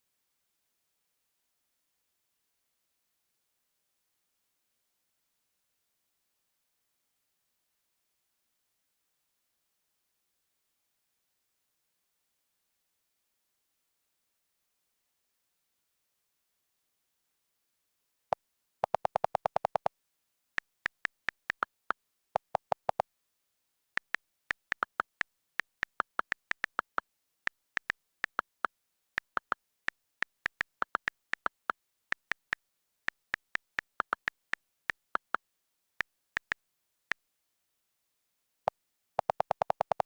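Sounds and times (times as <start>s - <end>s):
sharp clicks: 18.8s - 19.9s, 20.6s - 23.1s, 24.0s - 37.1s, 38.7s - 40.0s.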